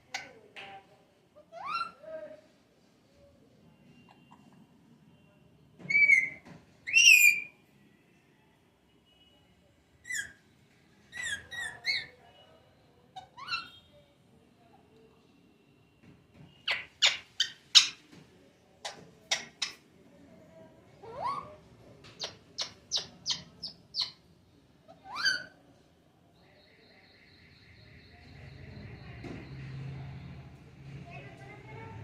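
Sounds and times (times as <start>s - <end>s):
parrot calling: 24.9s - 25.6s.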